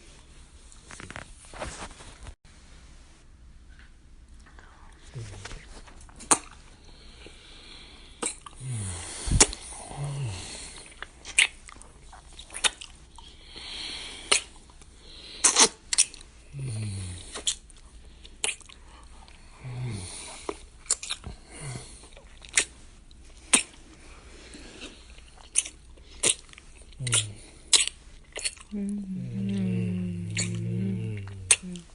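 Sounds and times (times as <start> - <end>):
breathy sounds: 6.8 - 11.0, 18.2 - 20.6, 21.2 - 22.2, 26.0 - 27.8, 28.6 - 31.9
wet lip smacks kissing: 11.3 - 11.6, 12.5 - 12.9, 14.3 - 14.5, 15.4 - 16.2, 18.4 - 18.8, 22.5 - 22.7, 23.5 - 23.8, 25.6 - 28.6
low murmurs: 28.8 - 31.9.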